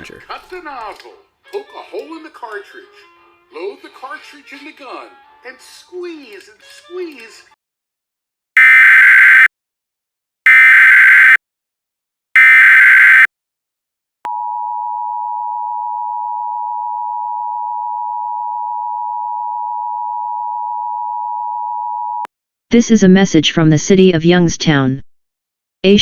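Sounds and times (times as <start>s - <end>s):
digital data bursts: 12.4s - 13.3s.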